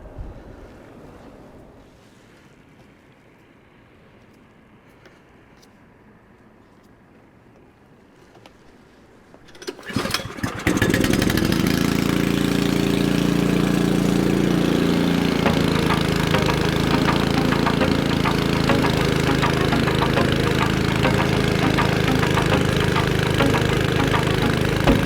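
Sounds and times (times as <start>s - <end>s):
snowblower engine starting: 9.5s - 25.0s.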